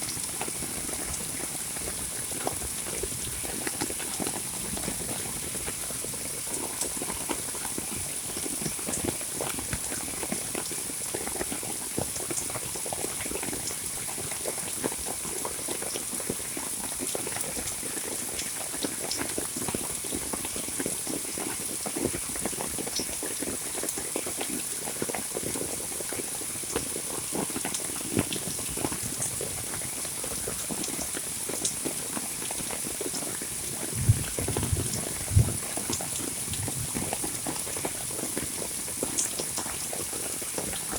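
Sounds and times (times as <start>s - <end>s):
heavy rain falling: 33.0s - 40.9s
loud thumps: 34.0s - 35.6s.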